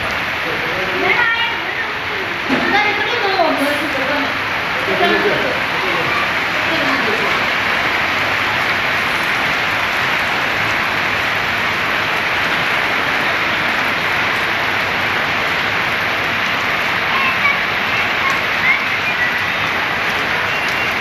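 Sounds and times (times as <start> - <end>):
heavy rain pouring: 0.0 - 21.0.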